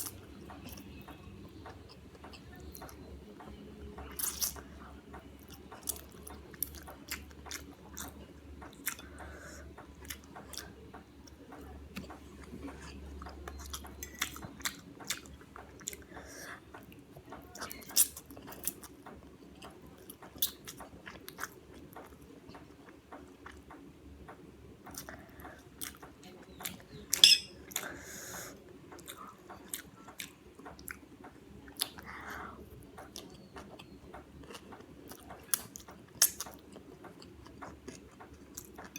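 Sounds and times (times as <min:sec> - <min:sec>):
chewing and biting food: 0:05.4 - 0:10.8, 0:11.9 - 0:23.7, 0:31.7 - 0:38.9.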